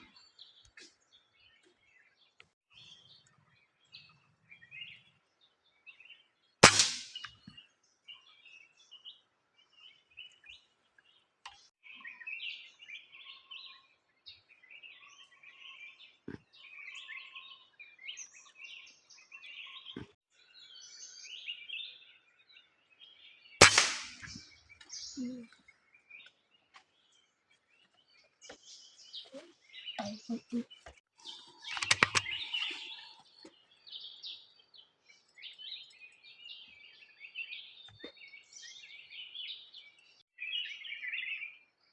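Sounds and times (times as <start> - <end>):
small birds chirping: 0.0 - 41.9
air rifle firing: 6.6 - 7.3, 23.6 - 24.4.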